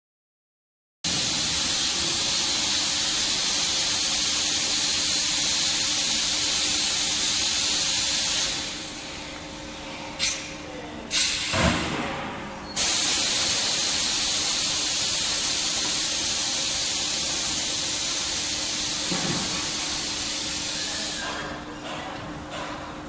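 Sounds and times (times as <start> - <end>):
compressed air hissing: 1.1 - 8.8, 12.8 - 21.4.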